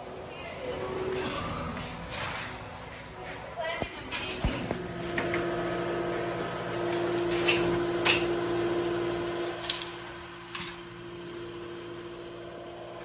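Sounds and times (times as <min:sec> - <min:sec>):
motor humming: 0:04.4 - 0:13.0.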